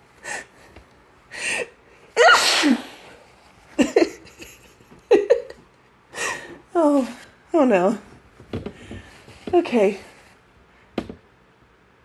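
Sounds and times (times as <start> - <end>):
woman sneezing: 2.2 - 3.1.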